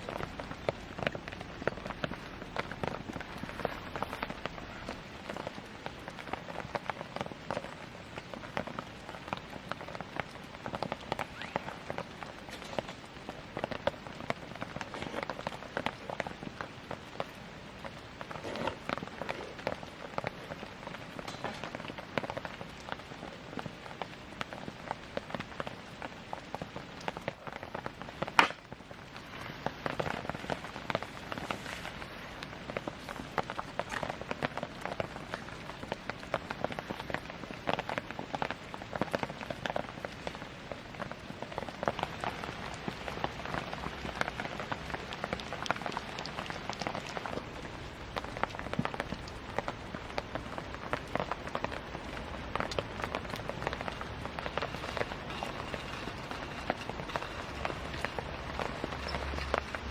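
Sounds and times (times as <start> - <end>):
campfire crackling: 0.0 - 59.9
loud sharp pop from fire: 28.4 - 28.7.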